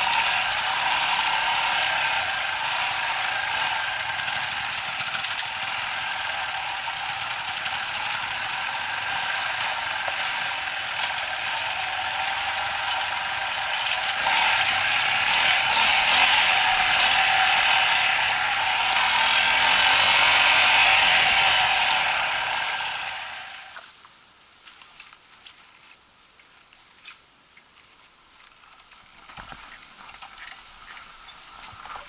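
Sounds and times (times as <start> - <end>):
motorcycle engine running: 0.0 - 23.8.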